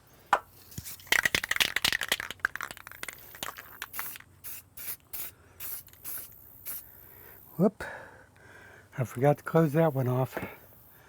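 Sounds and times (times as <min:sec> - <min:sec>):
spray can clicks: 0:00.7 - 0:06.8
aerosol spray hissing: 0:03.4 - 0:06.9.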